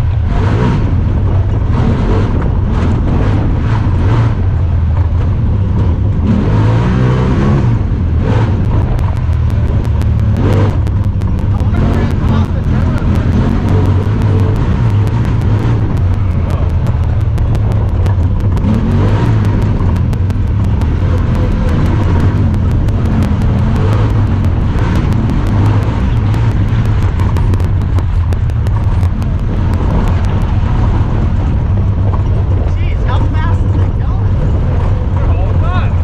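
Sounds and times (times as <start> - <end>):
engine running with low drone: 0.0 - 36.0
rapid regular camera ticking: 8.0 - 32.3.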